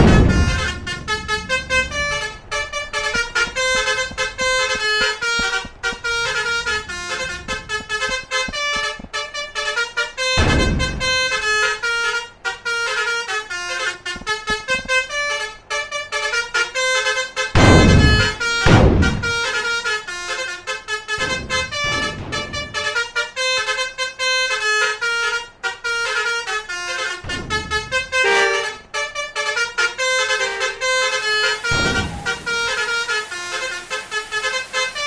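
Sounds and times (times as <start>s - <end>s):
loud rushing noise: 0.0s - 7.8s, 21.2s - 23.0s, 30.4s - 35.0s
multi-tone bus horn tune: 0.0s - 35.0s.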